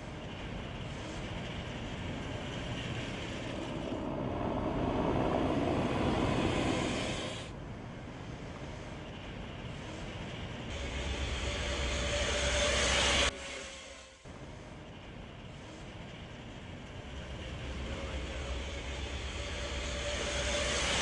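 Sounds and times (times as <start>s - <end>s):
electric motorcycle rushing past: 3.5s - 7.5s.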